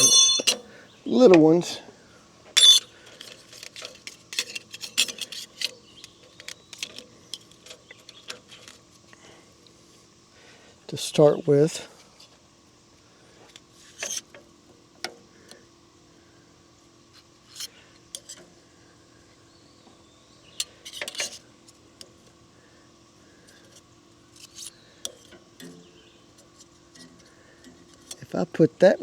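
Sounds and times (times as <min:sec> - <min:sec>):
metal shims clinking: 0:00.0 - 0:00.7, 0:02.6 - 0:08.7.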